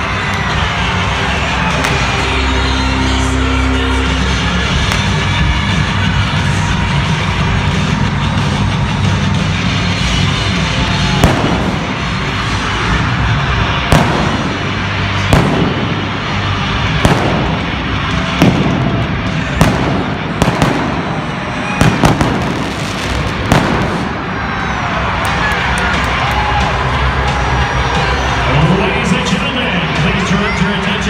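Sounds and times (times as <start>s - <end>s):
loud background din: 0.0s - 31.0s
pyrotechnic bangs: 11.1s - 12.9s, 13.8s - 24.7s.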